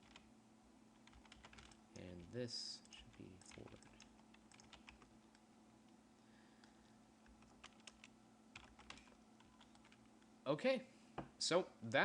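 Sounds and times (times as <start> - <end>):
computer mouse clicks: 2.8 - 5.4.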